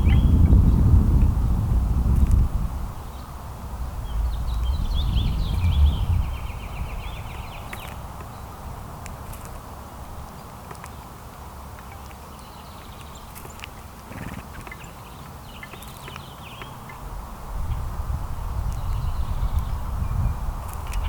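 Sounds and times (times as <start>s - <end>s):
steady low rumble: 0.0s - 10.4s, 16.8s - 21.0s
small birds chirping: 0.0s - 21.0s.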